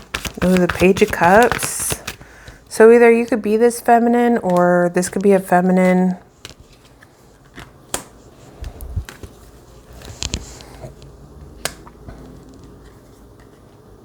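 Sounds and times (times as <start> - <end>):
cards clicking and slapping: 0.0 - 2.7, 7.5 - 9.4.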